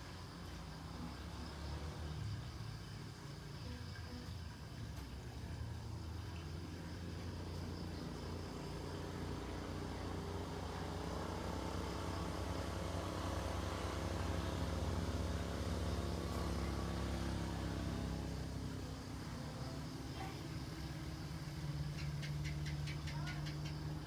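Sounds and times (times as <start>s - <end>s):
motor vehicle engine hum: 0.0s - 24.0s.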